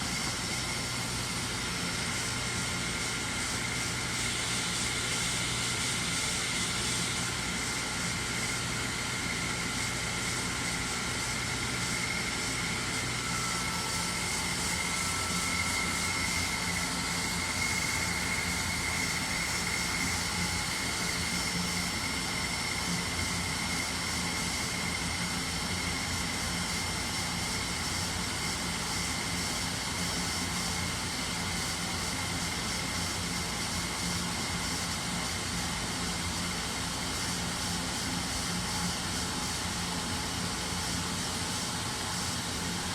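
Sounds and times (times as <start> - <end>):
high machine whine: 0.0 - 42.9
machine tool humming: 9.4 - 23.3.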